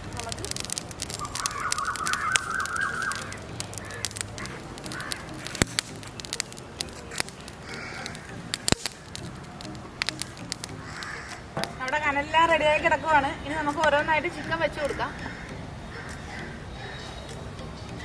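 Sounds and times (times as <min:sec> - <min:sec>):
charcoal fire crackling and popping: 0:00.0 - 0:17.8
crow cawing: 0:01.2 - 0:05.6, 0:07.6 - 0:09.2, 0:10.8 - 0:11.8, 0:13.9 - 0:17.3.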